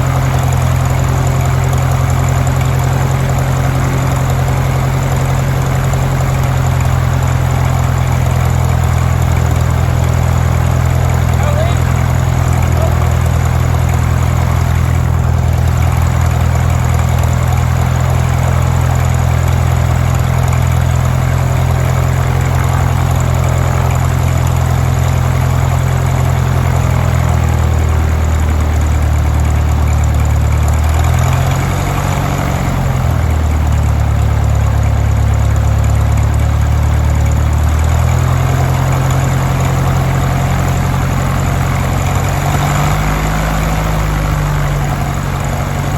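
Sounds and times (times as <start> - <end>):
aircraft engine and propeller running: 0.0 - 45.9.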